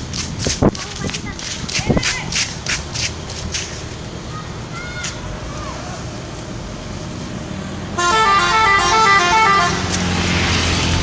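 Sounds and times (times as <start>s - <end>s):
bus engine running: 0.0s - 11.0s
musical bus horn tune: 7.9s - 9.9s.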